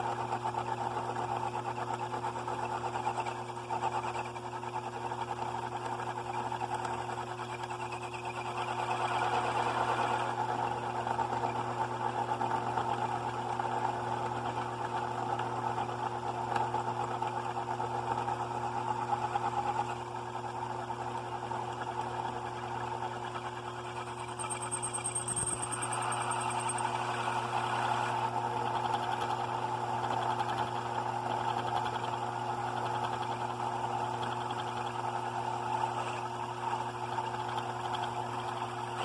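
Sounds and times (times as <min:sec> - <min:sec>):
saw electric motor running: 0:23.8 - 0:28.3.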